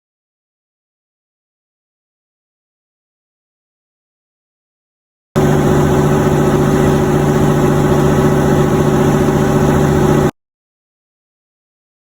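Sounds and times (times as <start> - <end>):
boat engine humming: 5.4 - 10.3.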